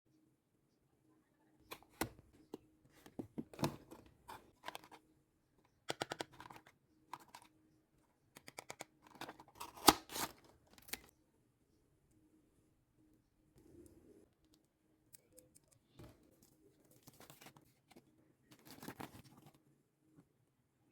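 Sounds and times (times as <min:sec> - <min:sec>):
packaging crinkling and tearing: 0:09.1 - 0:11.1.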